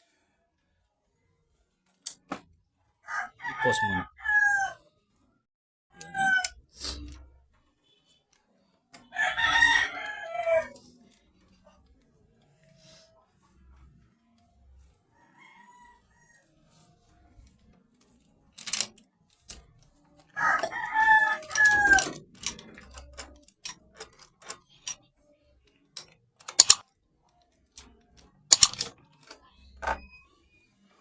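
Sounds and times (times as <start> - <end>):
rooster crowing: 3.0 - 4.8, 9.1 - 10.8, 15.1 - 16.5, 20.4 - 22.2
sharp clicks and knocks: 26.0 - 26.9, 27.8 - 30.1.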